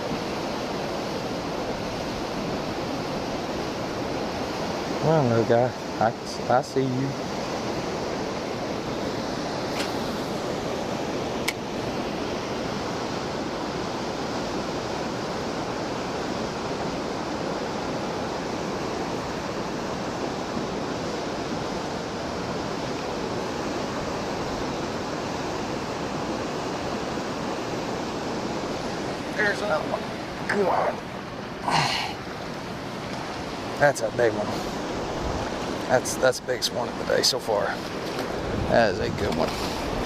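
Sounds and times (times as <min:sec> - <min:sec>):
river water flowing: 0:00.0 - 0:40.0
sharp click: 0:09.8 - 0:10.0, 0:11.4 - 0:11.6.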